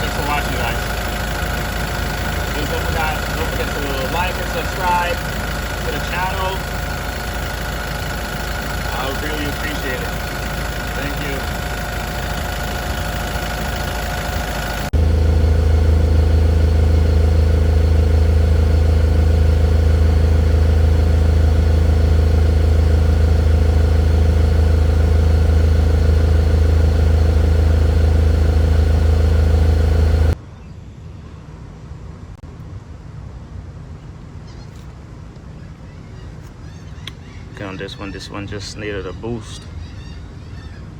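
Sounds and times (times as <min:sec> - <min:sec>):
engine idling: 0:00.0 - 0:30.4.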